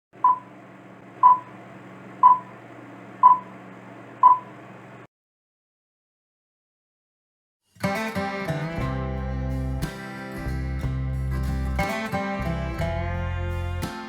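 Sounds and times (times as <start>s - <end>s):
short timer beeps: 0.2s - 0.4s, 1.2s - 1.5s, 2.2s - 2.5s, 3.2s - 3.4s, 4.2s - 4.5s.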